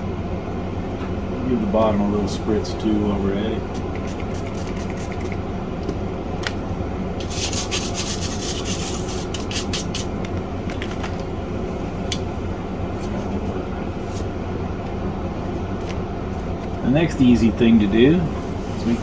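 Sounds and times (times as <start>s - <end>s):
steady hum: 0.0s - 19.0s
stiff brush scrubbing: 3.9s - 5.4s, 7.2s - 9.9s.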